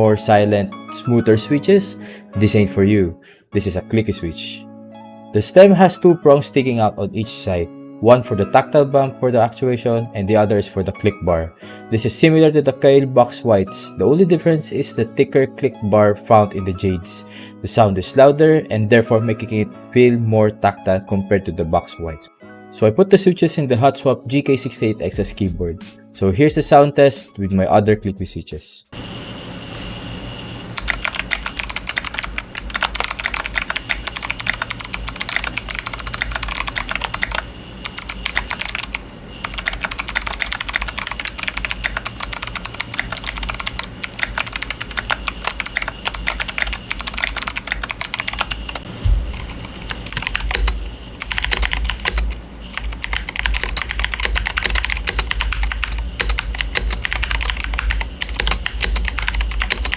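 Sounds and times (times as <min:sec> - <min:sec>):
fast typing on mechanical keyboard: 0:30.8 - 0:59.9.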